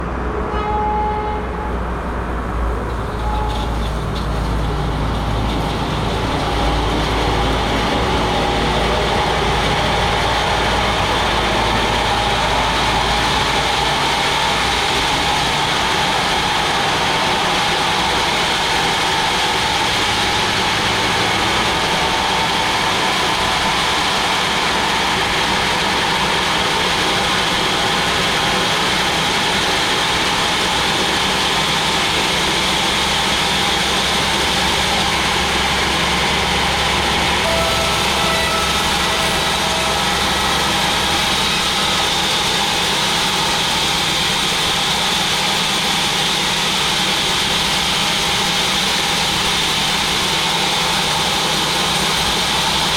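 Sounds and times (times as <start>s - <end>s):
sawmill machine rumbling: 2.0s - 52.9s
hissing cutting noise: 37.4s - 44.1s.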